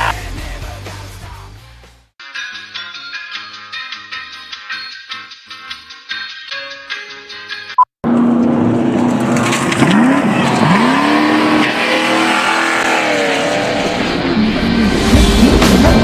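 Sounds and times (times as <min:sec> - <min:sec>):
race engines revving: 0:08.1 - 0:16.0.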